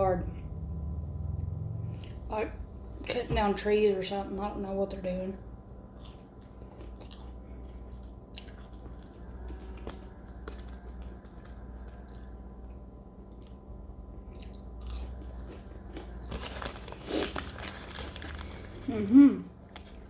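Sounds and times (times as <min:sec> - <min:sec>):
low machinery drone: 0:00.0 - 0:20.0
chewing and wet clicks: 0:05.7 - 0:16.2.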